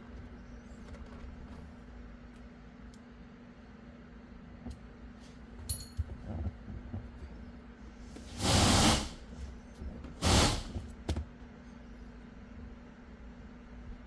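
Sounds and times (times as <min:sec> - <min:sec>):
clicks and clink of tools: 0:05.6 - 0:06.1
short loud hissing bursts: 0:08.2 - 0:09.3, 0:10.2 - 0:10.8.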